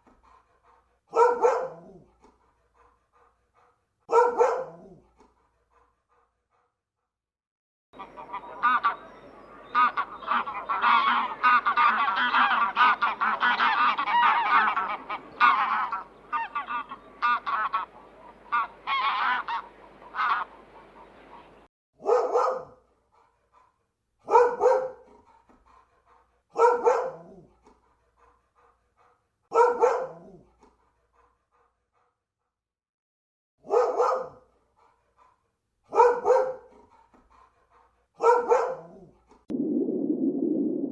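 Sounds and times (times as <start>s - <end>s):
waterfowl honking and calling: 8.0s - 21.6s.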